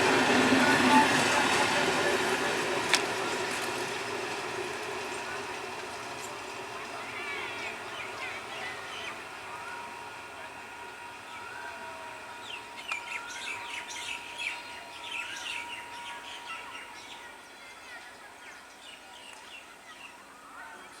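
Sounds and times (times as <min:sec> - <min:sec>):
faint steady whine: 0:00.0 - 0:20.8
birds chirping: 0:11.0 - 0:20.2.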